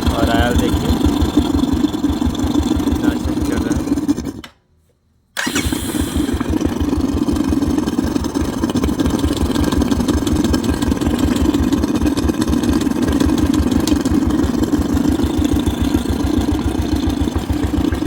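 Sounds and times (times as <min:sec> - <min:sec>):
motorcycle engine idling: 0:00.0 - 0:04.4, 0:05.4 - 0:18.0.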